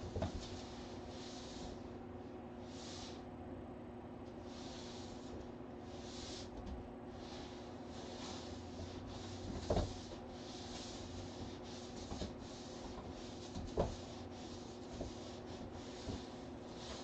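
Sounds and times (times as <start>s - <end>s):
steady low hum: 0.0s - 17.0s
broom bristles scratching: 4.5s - 6.6s, 7.2s - 17.0s.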